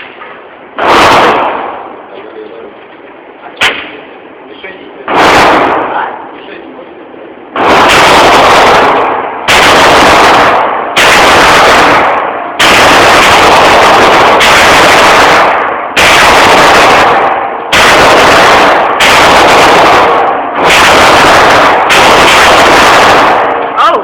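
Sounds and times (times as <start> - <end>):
pistol shots: 0.8 - 2.0, 3.6 - 4.0, 5.0 - 6.2, 7.5 - 23.8.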